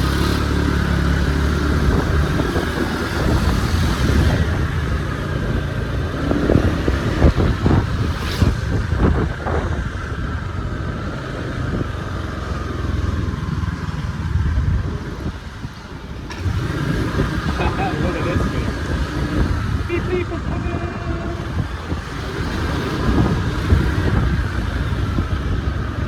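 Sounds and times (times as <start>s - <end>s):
wind noise: 1.5s - 12.2s, 13.2s - 26.0s
vehicle engine running: 11.6s - 26.0s.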